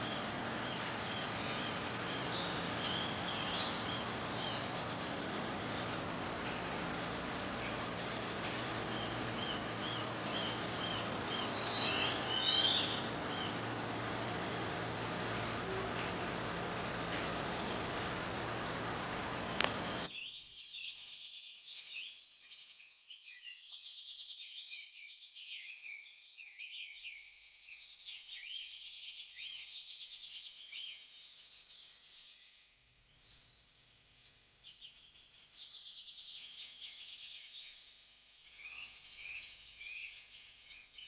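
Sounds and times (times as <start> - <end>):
loud steady hiss: 0.0 - 20.1
many birds chirping: 0.0 - 20.1.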